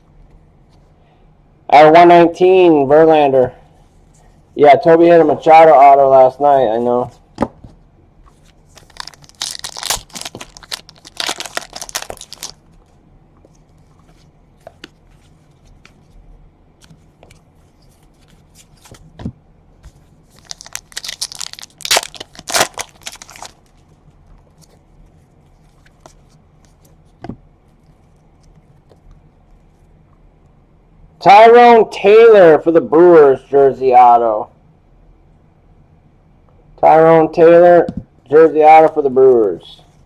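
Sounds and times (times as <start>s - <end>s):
wrappers torn and crinkled: 8.6s - 12.8s, 20.3s - 23.8s.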